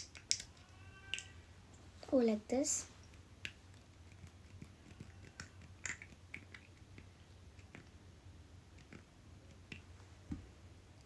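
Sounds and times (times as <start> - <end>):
plastic pieces clicking: 0.0 - 1.4, 3.4 - 7.9.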